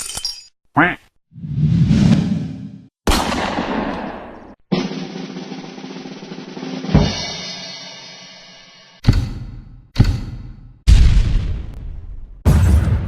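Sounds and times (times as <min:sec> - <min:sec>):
sharp drum-like hits: 0:04.7 - 0:10.9.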